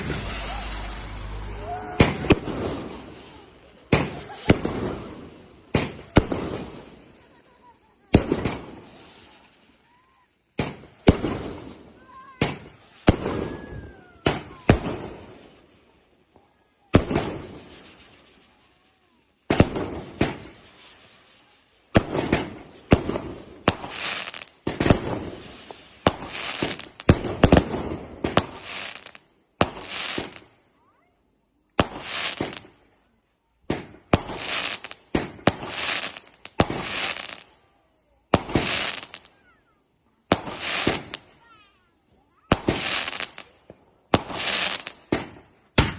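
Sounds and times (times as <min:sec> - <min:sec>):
fireworks banging: 0:00.0 - 0:30.5, 0:31.8 - 0:37.6, 0:38.2 - 0:45.9
faint rising firework whistles: 0:00.0 - 0:31.0, 0:31.8 - 0:45.9.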